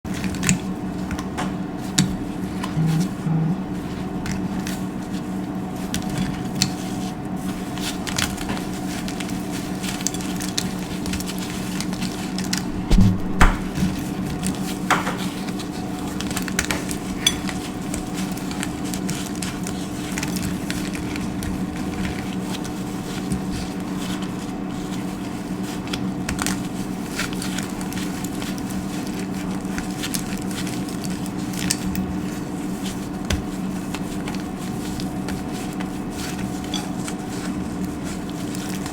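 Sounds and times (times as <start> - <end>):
steady low hum: 2.7 - 4.0, 12.6 - 14.0.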